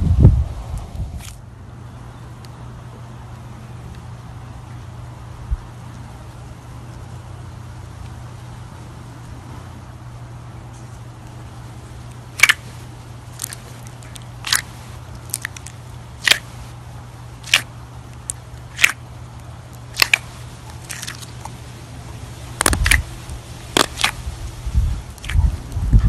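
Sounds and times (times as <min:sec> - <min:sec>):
steady low hum: 0:00.0 - 0:26.0
slime popping and clicking: 0:12.4 - 0:12.6, 0:13.4 - 0:14.7, 0:15.3 - 0:16.5, 0:17.4 - 0:19.0, 0:19.9 - 0:21.3, 0:22.6 - 0:23.0, 0:23.8 - 0:24.2.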